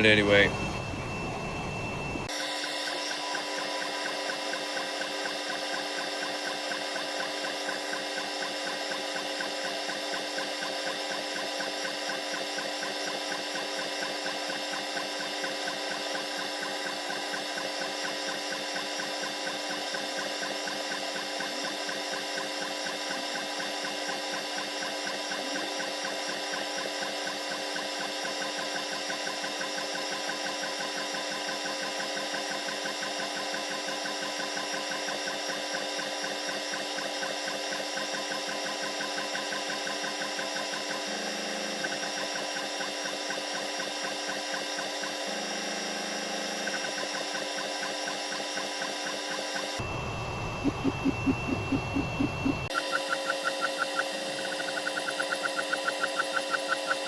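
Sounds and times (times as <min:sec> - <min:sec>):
low hum: 0:00.0 - 0:02.3, 0:49.8 - 0:52.8
laser engraver whine: 0:00.0 - 0:57.0.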